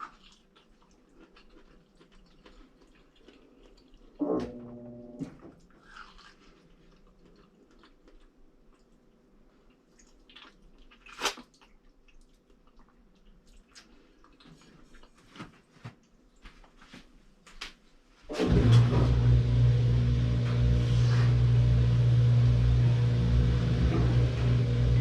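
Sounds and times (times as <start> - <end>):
washing machine motor hum: 4.2 - 5.5, 18.3 - 25.0.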